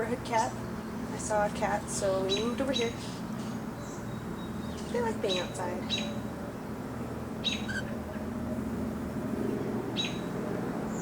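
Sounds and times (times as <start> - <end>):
low background hum: 0.0 - 11.0
cockatiels chirping: 7.4 - 7.9.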